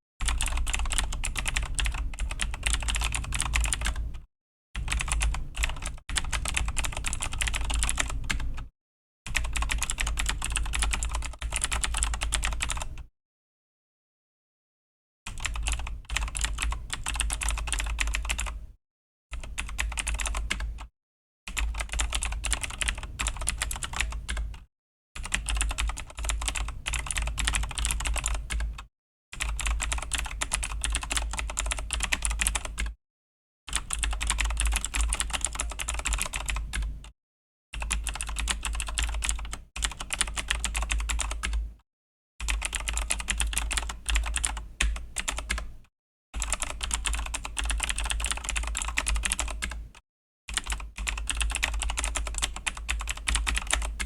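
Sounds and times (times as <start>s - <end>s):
mechanical keyboard typing: 0.2s - 4.2s, 4.8s - 8.7s, 9.4s - 13.1s, 15.4s - 18.6s, 19.4s - 20.8s, 21.6s - 33.0s, 33.7s - 36.9s, 37.8s - 41.6s, 42.4s - 45.7s, 46.4s - 49.9s, 50.5s - 54.0s.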